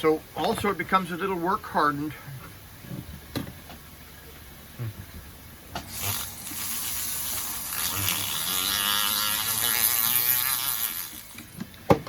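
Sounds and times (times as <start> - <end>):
electric tool buzzing against metal: 5.8 - 11.6.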